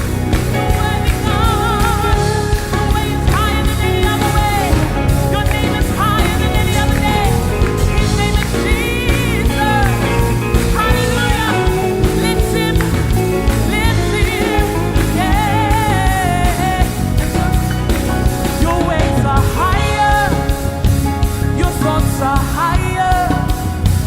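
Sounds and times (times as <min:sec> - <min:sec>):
drums: 0:00.0 - 0:24.0
live band playing: 0:00.0 - 0:24.0
person singing: 0:00.0 - 0:24.0.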